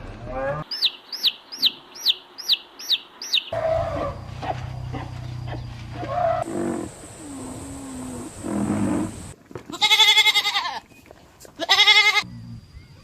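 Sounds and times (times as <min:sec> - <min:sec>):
goat bleating: 0:09.7 - 0:10.8, 0:11.6 - 0:12.3.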